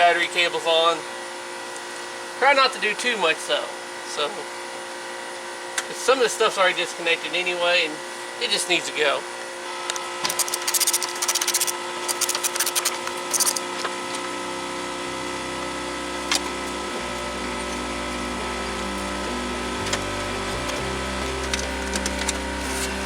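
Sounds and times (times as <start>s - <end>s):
background music: 16.3s - 23.0s.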